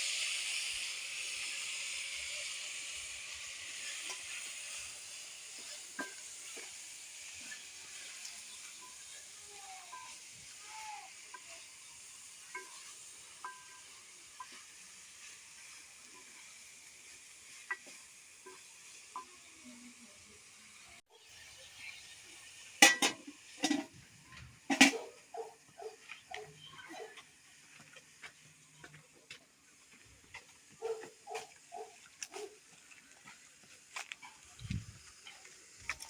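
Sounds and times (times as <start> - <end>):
food sizzling in a pan: 0.0 - 36.0
stirring scrapes and clinks: 3.8 - 10.5, 12.4 - 16.6.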